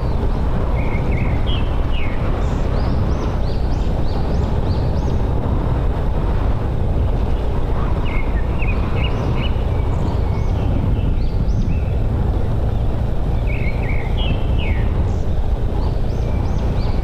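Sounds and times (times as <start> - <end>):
birds chirping: 0.0 - 17.0
motorbike engine rumble: 0.0 - 17.0
riding wind: 0.0 - 17.0.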